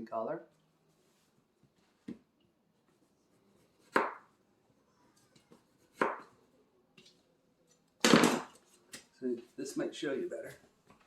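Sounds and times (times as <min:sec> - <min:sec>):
knife chopping onto cutting board: 0:03.8 - 0:04.2, 0:05.9 - 0:06.3.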